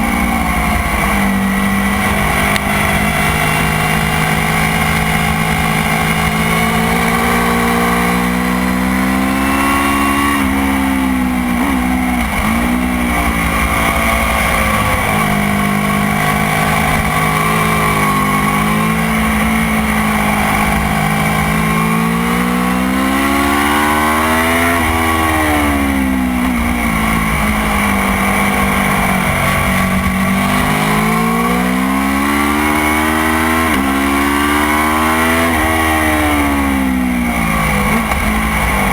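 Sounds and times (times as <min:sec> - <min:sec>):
motorcycle engine revving: 0:00.0 - 0:38.9
wind and tyre noise: 0:00.0 - 0:38.9.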